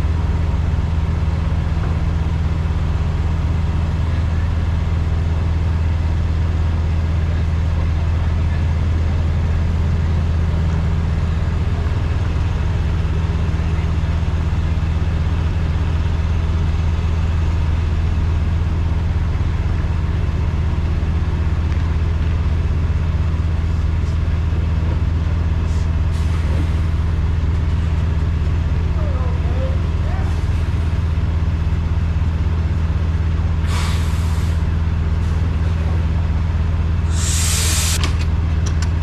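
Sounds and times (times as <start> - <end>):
diesel truck engine running: 0.0 - 39.0.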